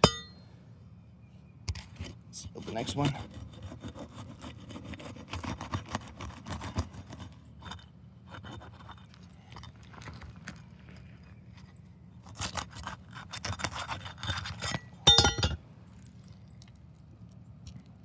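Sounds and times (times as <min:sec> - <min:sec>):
metal tool scraping shingle: 0:00.0 - 0:00.4, 0:12.2 - 0:15.6
ringing metallic clink: 0:00.0 - 0:00.4, 0:15.1 - 0:15.6.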